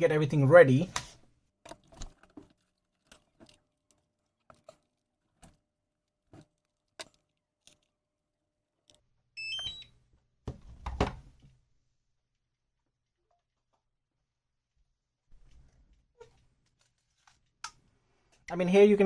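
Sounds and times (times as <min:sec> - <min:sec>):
handling clicks and knocks: 0:01.7 - 0:08.0.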